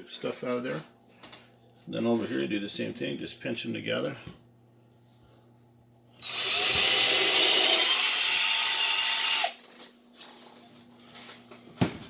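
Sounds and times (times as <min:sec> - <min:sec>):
electric drill boring into wood: 0:06.2 - 0:09.6.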